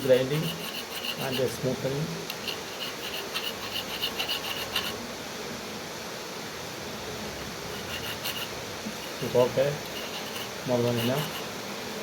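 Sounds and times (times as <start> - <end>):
hand file scraping steel: 0.0 - 5.0, 7.7 - 11.6.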